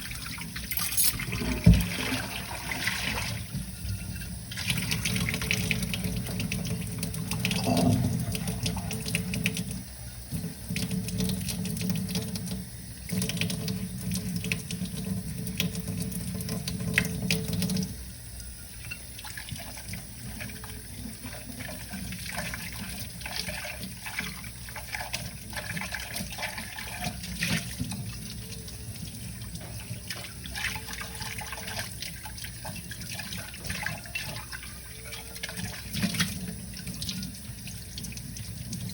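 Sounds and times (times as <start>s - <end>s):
tap water running into sink: 0.0s - 38.9s
dishes rubbing: 0.6s - 1.4s
dishes clinking: 0.7s - 1.4s, 7.5s - 8.7s.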